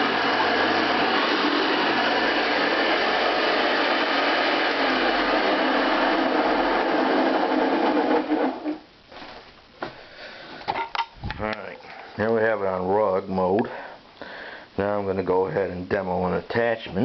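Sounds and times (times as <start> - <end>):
upright vacuum running: 0.0 - 9.3.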